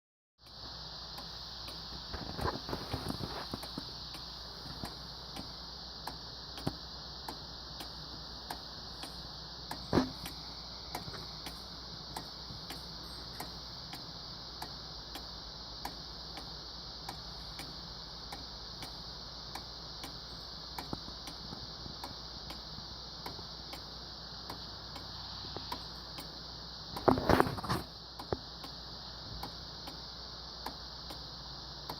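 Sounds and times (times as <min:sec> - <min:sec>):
clock ticking: 0:00.4 - 0:31.9.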